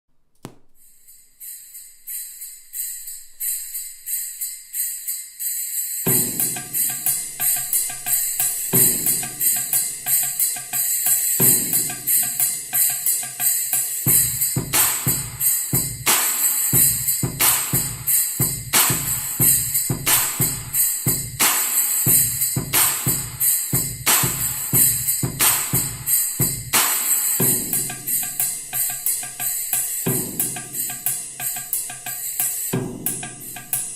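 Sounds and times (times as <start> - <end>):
kick-drum beat: 0.4 - 0.8, 14.0 - 31.9
high-pitched percussion: 0.7 - 33.9.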